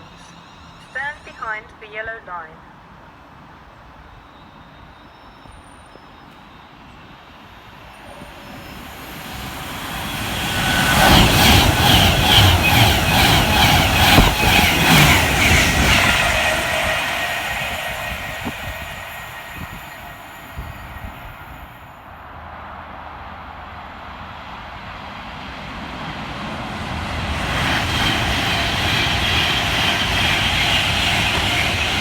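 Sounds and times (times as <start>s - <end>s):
passenger train passing: 0.0s - 32.0s
train wheels clattering: 7.8s - 21.8s.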